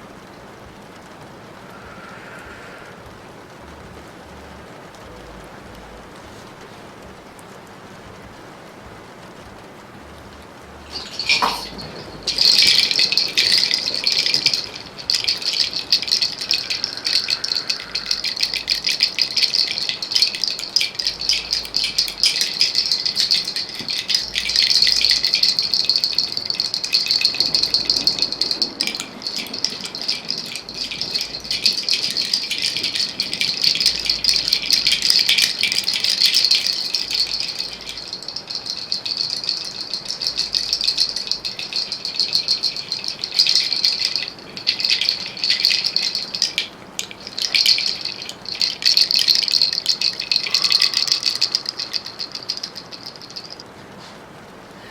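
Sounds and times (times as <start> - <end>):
hand rattle shaken: 10.8 - 53.6.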